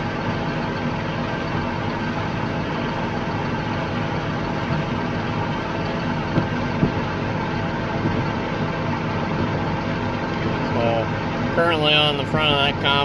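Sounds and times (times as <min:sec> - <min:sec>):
farm vehicle engine running: 0:00.0 - 0:13.0.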